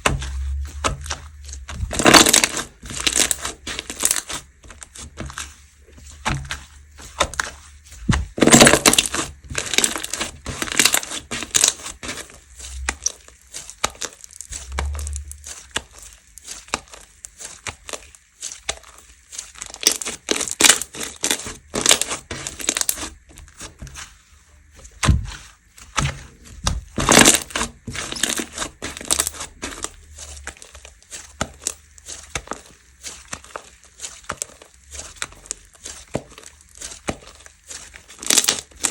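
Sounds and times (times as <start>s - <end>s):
slime squishing by hand: 0.0s - 38.9s.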